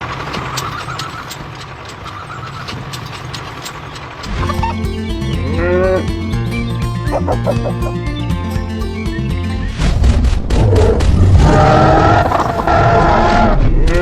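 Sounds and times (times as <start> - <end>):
music with deep bass: 4.6 - 9.6.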